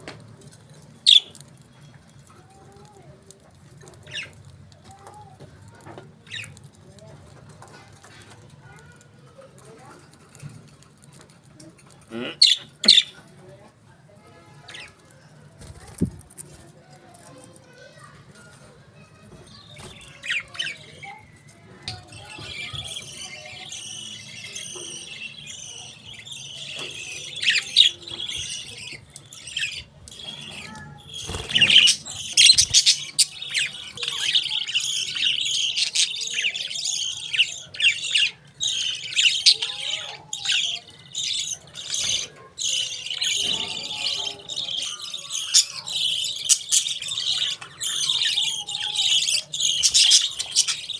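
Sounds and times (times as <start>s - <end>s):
budgerigars chirping: 22.2s - 50.9s.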